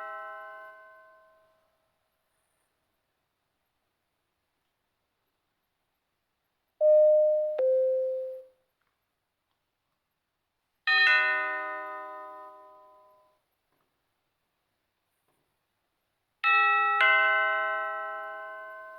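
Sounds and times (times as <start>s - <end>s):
single doorbell chime: 6.8s - 8.5s
two-tone doorbell chime: 6.8s - 8.5s, 10.9s - 13.3s.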